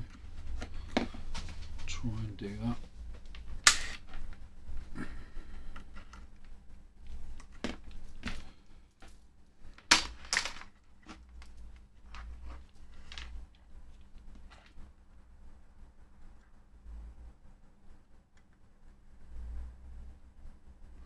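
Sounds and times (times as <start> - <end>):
faint low hum: 0.0 - 21.0
tools clicking and tapping: 3.3 - 4.4.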